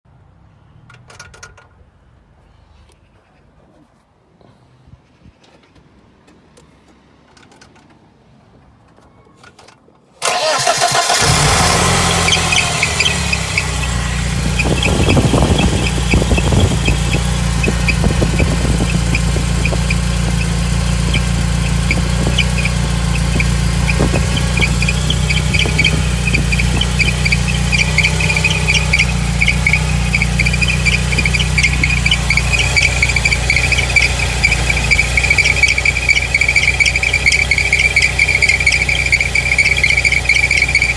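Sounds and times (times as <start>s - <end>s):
car engine starting and idling: 10.1s - 40.9s
high chirping belt squeal: 10.2s - 40.9s.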